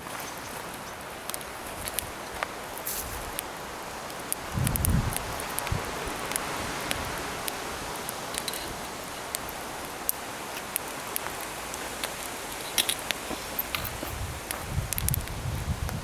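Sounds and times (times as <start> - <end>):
meat sizzling over hot coals: 0.1 - 16.0.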